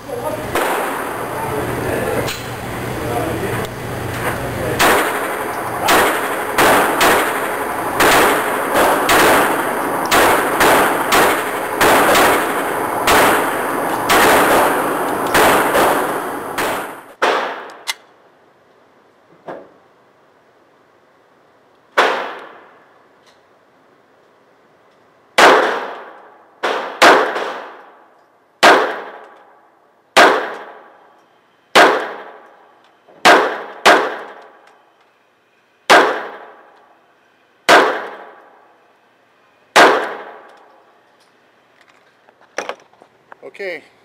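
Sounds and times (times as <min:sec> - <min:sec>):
pistol shots with echo: 0:00.5 - 0:01.1, 0:04.7 - 0:17.8, 0:22.0 - 0:22.7, 0:25.4 - 0:28.0, 0:28.6 - 0:29.3, 0:30.2 - 0:31.0, 0:31.8 - 0:32.4, 0:33.2 - 0:34.6, 0:35.9 - 0:36.7, 0:37.7 - 0:38.4, 0:39.7 - 0:40.5.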